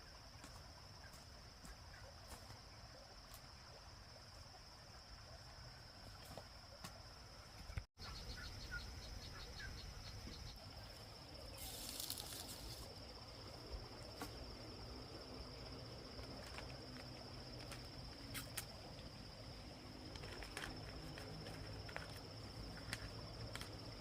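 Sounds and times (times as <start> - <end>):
insects trilling: 0.0 - 24.0
short hiss: 11.6 - 12.8.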